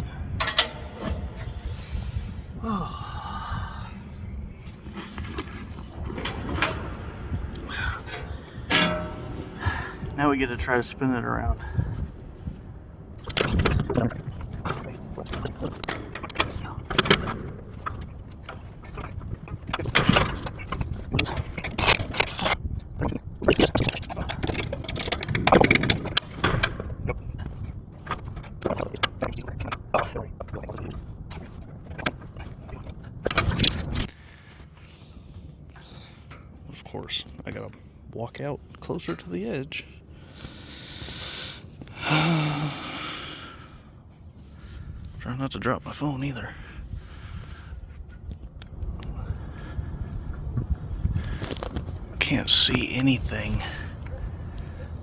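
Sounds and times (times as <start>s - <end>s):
metal hardware scraping and clanking: 0.0s - 2.5s, 4.9s - 22.6s, 23.5s - 28.6s
wind buffeting microphone: 0.0s - 34.3s, 44.3s - 45.6s, 46.3s - 55.0s
person sighing: 2.6s - 4.1s, 41.9s - 43.7s.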